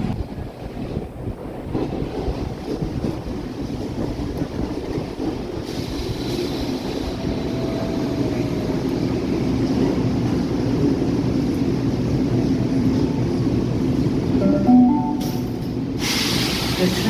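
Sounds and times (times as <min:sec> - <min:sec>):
electric train rumbling: 0:00.0 - 0:17.0
hiss: 0:05.5 - 0:07.2, 0:16.0 - 0:17.0.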